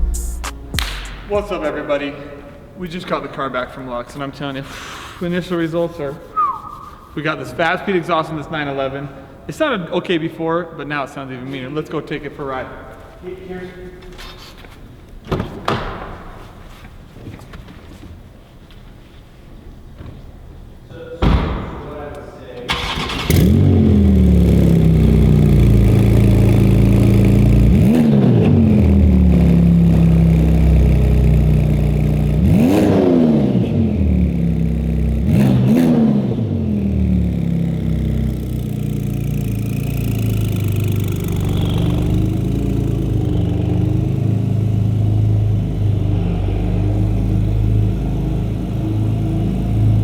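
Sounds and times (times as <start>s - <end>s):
car engine idling: 22.7s - 32.6s, 36.6s - 50.0s
car engine revving: 22.7s - 50.0s.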